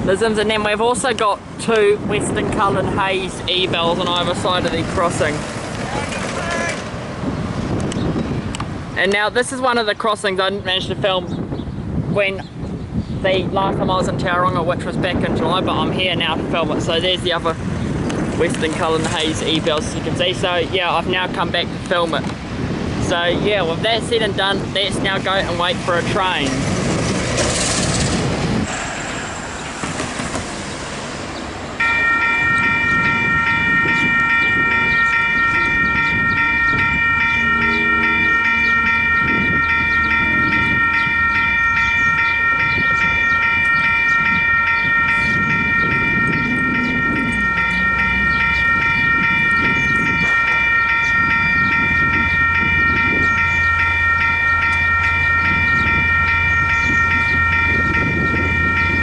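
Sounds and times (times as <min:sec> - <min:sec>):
level-crossing bells ringing: 0:31.8 - 0:59.0
low rumble: 0:31.9 - 0:59.0.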